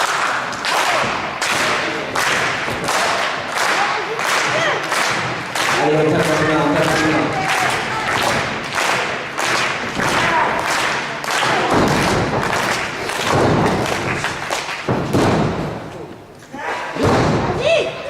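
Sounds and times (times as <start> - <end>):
heavy thumps: 11.5 - 16.2, 17.0 - 17.6.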